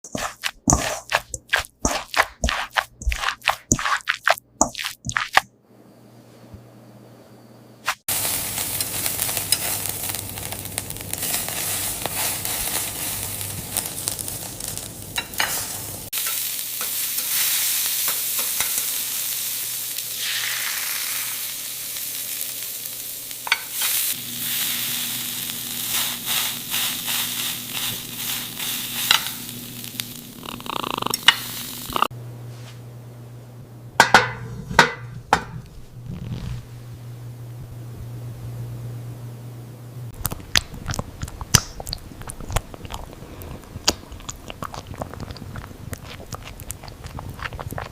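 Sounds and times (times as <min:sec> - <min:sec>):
utensil scraping a pan: 0:00.0 - 0:05.4
meatballs sizzling in a pan: 0:08.1 - 0:32.1.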